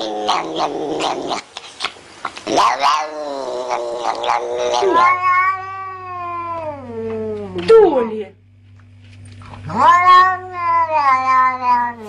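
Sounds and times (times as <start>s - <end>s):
cat yowling: 2.6s - 7.6s, 9.6s - 12.0s.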